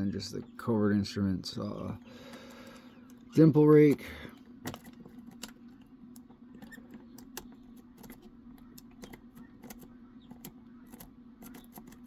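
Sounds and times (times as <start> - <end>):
lock pick clicking and scraping: 4.6 - 5.6.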